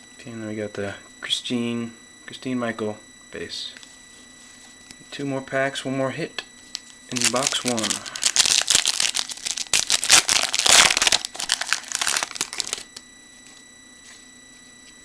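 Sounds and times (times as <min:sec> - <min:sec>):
wrapper crackling being torn open: 0:06.7 - 0:13.0.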